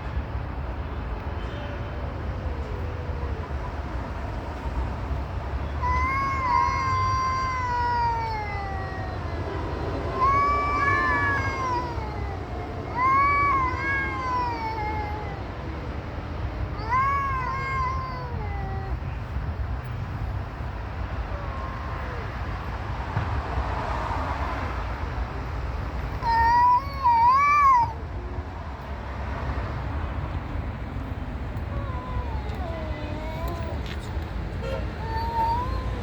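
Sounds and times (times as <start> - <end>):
cat meowing: 2.3 - 4.4, 5.8 - 16.0, 16.6 - 19.4, 21.2 - 22.7, 26.2 - 28.1, 31.6 - 34.0, 34.6 - 36.0.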